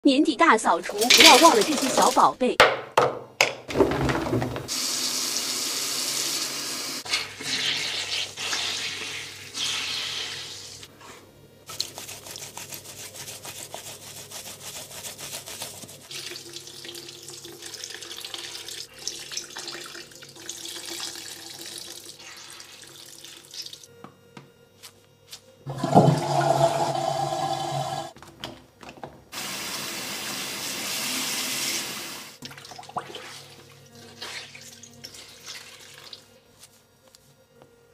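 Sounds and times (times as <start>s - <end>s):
brushes and sponges being rinsed: 0.8s - 2.4s, 7.0s - 20.1s, 30.0s - 36.8s
tap water running into sink: 0.9s - 2.3s, 16.1s - 23.9s, 25.7s - 28.1s.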